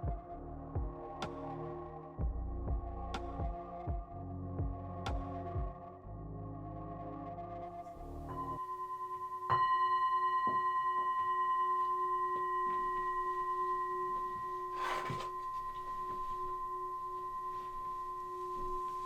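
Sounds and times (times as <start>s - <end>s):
singing bowl ringing: 8.3s - 19.0s.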